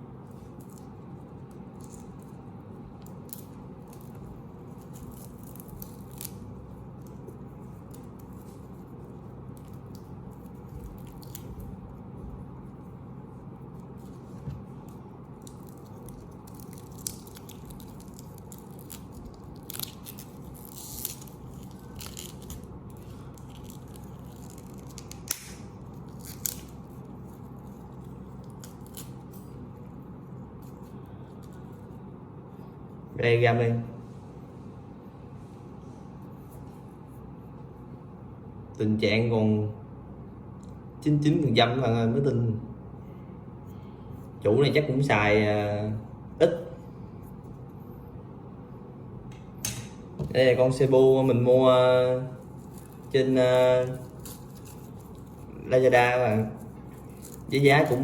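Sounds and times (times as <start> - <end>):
steady low hum: 0.0 - 58.0
plastic wrap rustling and tearing: 0.2 - 12.9, 13.6 - 32.1, 50.4 - 58.0.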